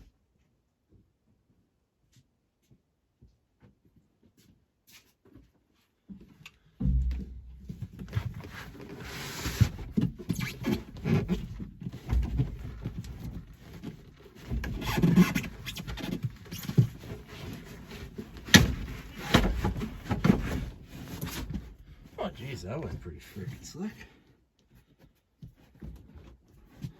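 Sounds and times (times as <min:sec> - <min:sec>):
metal clinks and knocks: 0:06.8 - 0:08.2.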